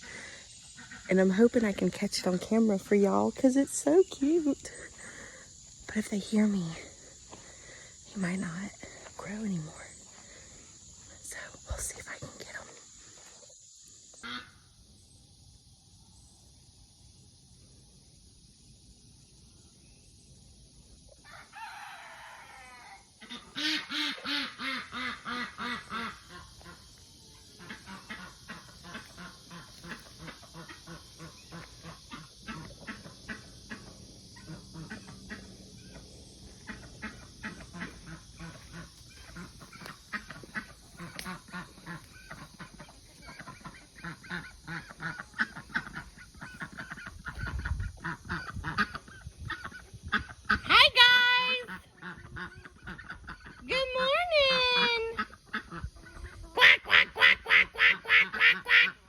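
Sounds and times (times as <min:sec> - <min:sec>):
young cockerel crowing: 0:21.2 - 0:23.1
chicks clucking and chirping: 0:55.2 - 0:56.6.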